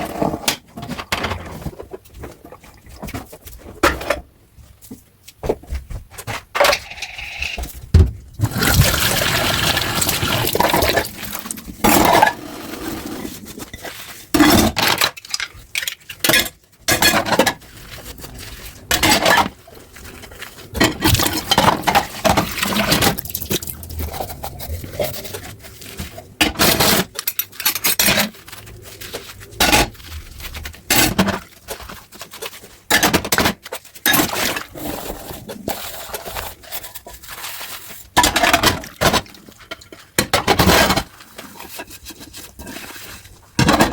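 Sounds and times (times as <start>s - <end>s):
dishes clinking and scraping: 6.6s - 7.8s, 10.0s - 18.0s, 18.8s - 37.2s
running water: 8.5s - 11.8s.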